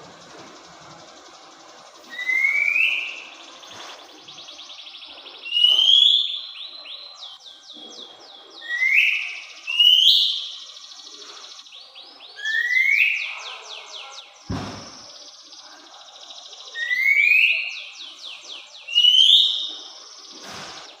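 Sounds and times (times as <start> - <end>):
bird singing whistles: 2.0 - 7.1, 8.6 - 11.7, 12.4 - 15.4, 16.6 - 21.0
low thump: 14.5 - 15.0.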